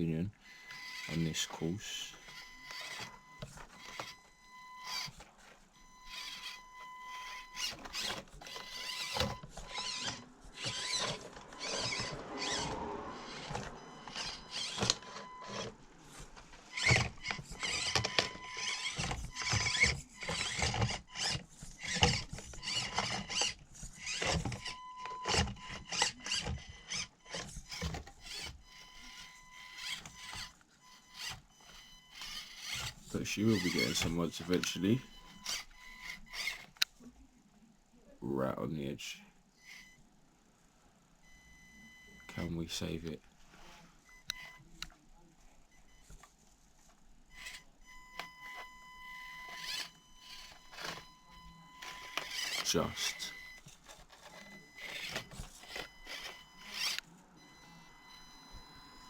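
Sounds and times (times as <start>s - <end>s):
small electric drivetrain whining: 0.0s - 37.0s, 39.6s - 40.1s, 45.7s - 59.0s.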